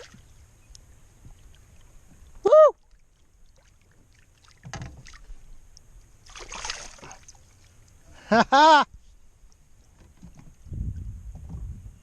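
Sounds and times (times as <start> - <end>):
man shouting woo: 2.4 - 2.8, 8.5 - 8.8
faint rustling knocks: 9.8 - 10.6.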